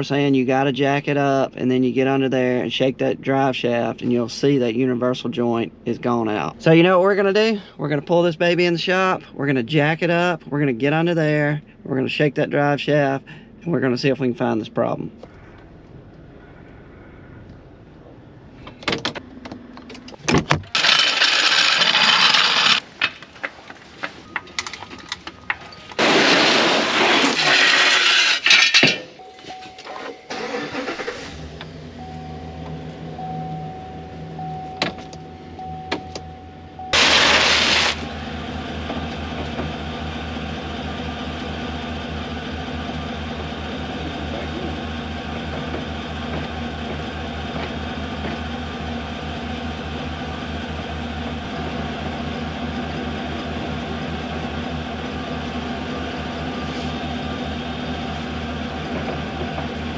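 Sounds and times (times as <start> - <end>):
pickup truck engine idling: 30.4 - 59.9
steady chime tone: 32.0 - 37.0
bursts of rushing noise: 37.0 - 38.0.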